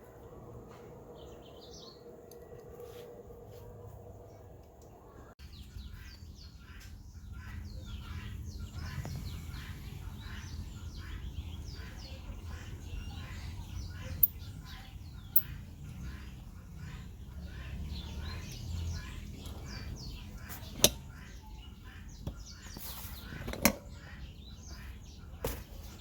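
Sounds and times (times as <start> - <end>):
birds chirping: 0.0 - 26.0.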